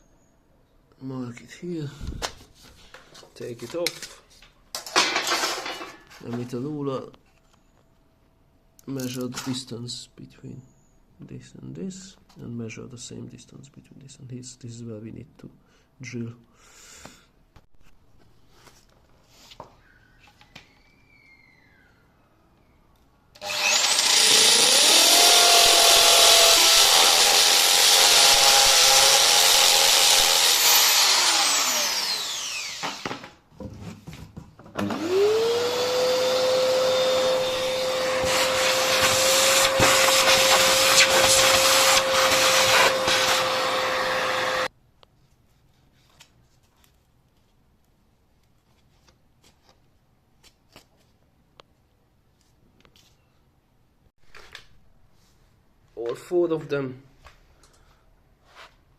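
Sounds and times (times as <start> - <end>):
electric drill boring: 23.4 - 33.2, 34.8 - 44.7.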